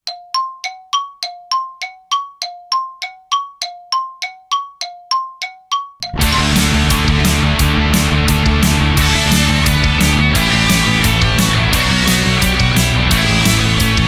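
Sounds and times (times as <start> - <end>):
bell struck rapidly: 0.1 - 14.0
loud rock music: 6.1 - 14.0.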